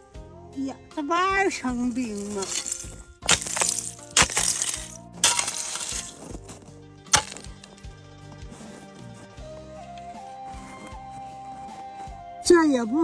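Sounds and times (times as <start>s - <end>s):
background music: 0.0s - 13.0s
ice pick striking ice: 1.6s - 7.9s
ice chips scattering: 1.7s - 7.8s.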